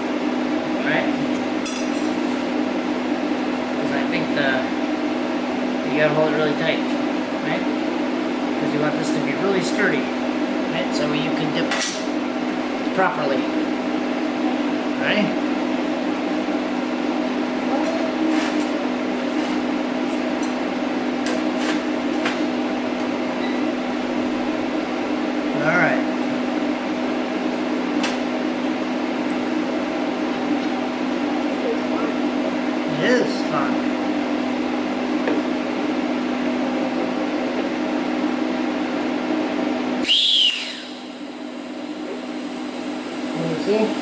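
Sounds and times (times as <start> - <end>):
welding machine electrical hum: 0.0 - 44.0
high tone rising and falling: 40.0 - 41.2
loud hiss: 40.0 - 44.0
welding arc buzzing: 40.0 - 44.0.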